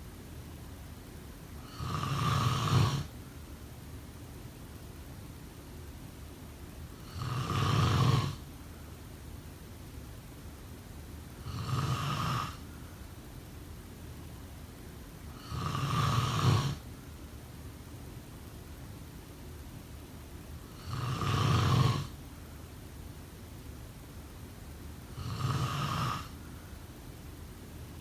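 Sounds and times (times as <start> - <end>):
person snoring: 1.6 - 3.1, 7.0 - 8.4, 11.4 - 12.6, 15.4 - 16.8, 20.7 - 22.2, 25.1 - 26.4.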